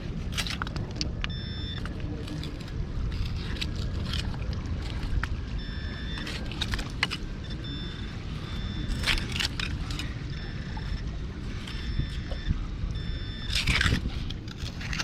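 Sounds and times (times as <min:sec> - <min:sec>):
sharp clicks and scrapes: 0:00.0 - 0:05.3, 0:08.8 - 0:10.2, 0:13.4 - 0:15.0
wind rumble on microphone: 0:00.0 - 0:15.0.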